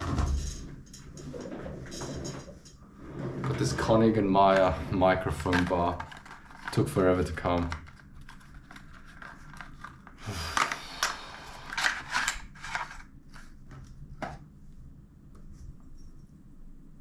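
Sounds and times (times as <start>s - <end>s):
packaging crinkling and rustling: 3.8s - 14.1s.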